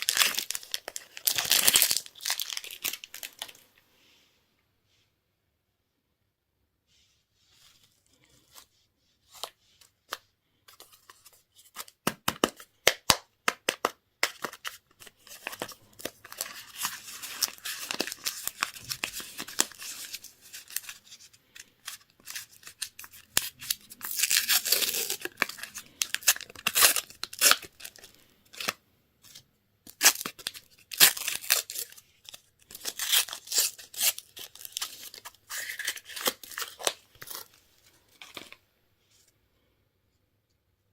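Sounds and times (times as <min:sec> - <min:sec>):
candy wrappers crinkling: 0:00.0 - 0:03.6, 0:10.7 - 0:38.6.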